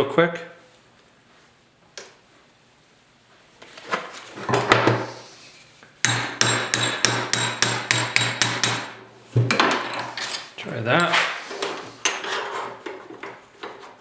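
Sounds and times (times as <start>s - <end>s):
hammer striking steel: 6.0s - 9.0s.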